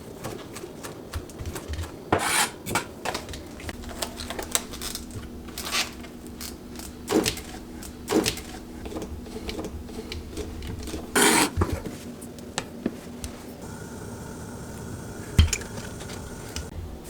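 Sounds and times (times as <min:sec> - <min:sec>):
utensils scraping dishes and pans: 0:08.2 - 0:11.8
faint steady hum: 0:13.5 - 0:17.0.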